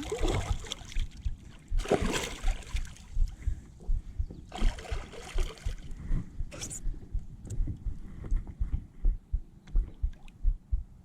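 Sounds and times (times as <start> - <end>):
water splashing: 0.0 - 3.2, 4.5 - 6.0
low bumps: 0.0 - 11.0.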